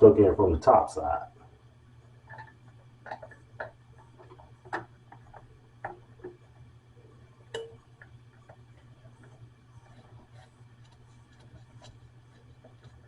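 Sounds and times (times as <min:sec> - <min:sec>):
steady low hum: 0:00.0 - 0:13.0
small drain parts clicking: 0:02.2 - 0:06.4.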